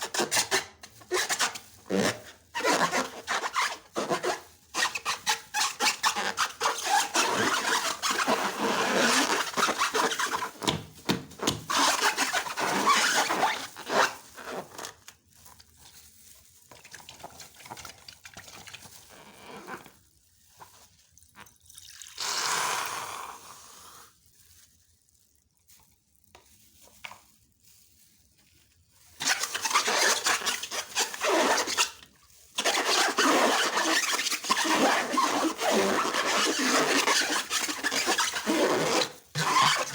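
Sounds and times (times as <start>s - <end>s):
slime squelching by hand: 3.5s - 20.0s.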